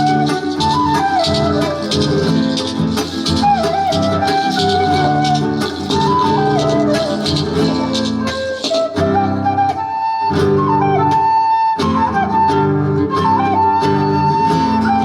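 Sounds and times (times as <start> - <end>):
rhythmic shaker: 0.0 - 9.4
flute melody with slides: 0.0 - 15.0.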